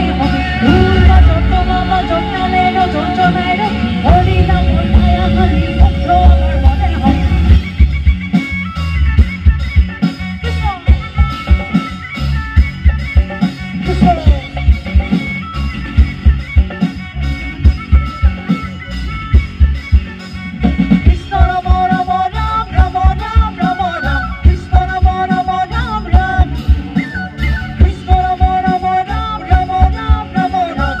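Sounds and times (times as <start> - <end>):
singing voice: 0.0 - 7.6, 10.4 - 11.8, 13.7 - 15.2, 21.0 - 31.0
pounding bass beat: 0.0 - 18.5.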